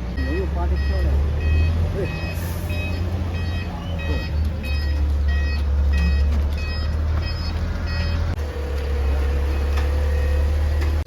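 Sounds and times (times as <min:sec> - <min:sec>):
car engine humming: 0:00.0 - 0:11.0
warning beeper: 0:00.1 - 0:08.3.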